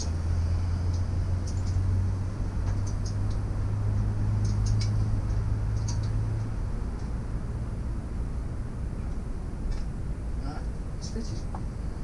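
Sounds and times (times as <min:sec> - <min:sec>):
steady low hum: 0:00.0 - 0:12.0
small clicks and taps: 0:02.6 - 0:03.4, 0:04.0 - 0:07.1.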